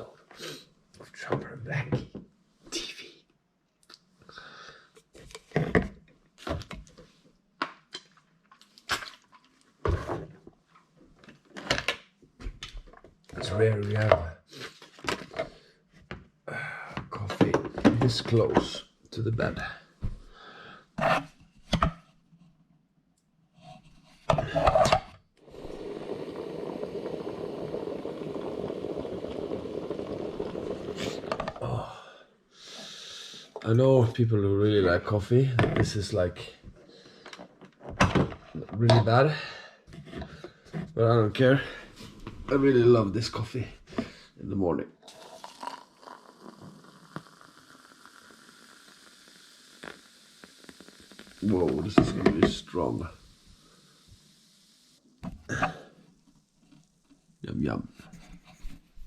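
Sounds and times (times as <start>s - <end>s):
faint steady hiss: 24.3s - 37.6s, 38.5s - 58.8s
liquid pouring into a cup: 25.5s - 31.9s, 45.0s - 54.6s.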